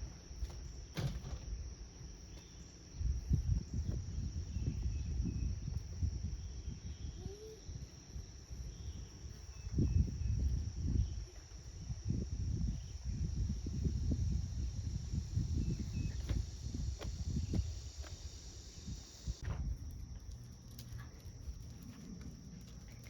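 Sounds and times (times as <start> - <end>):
high-pitched insect drone: 0.0 - 19.4.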